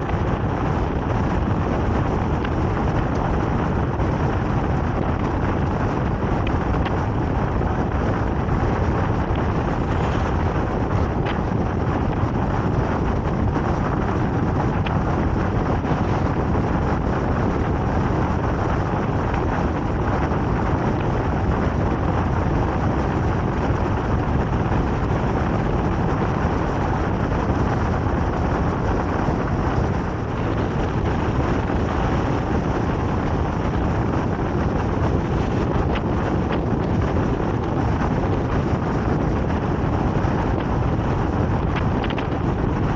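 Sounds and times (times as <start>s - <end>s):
vehicle rumble with road noise: 0.0s - 42.9s.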